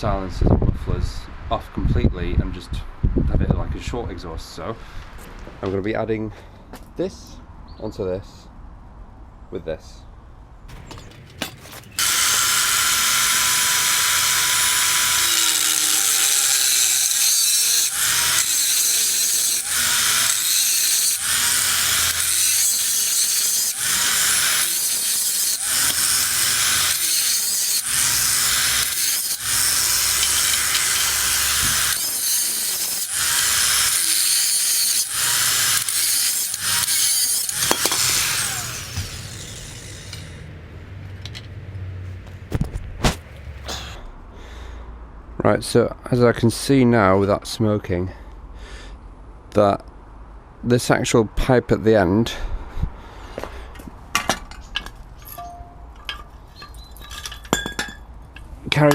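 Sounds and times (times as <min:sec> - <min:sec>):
power tool cutting metal pipe: 0:10.8 - 0:40.4.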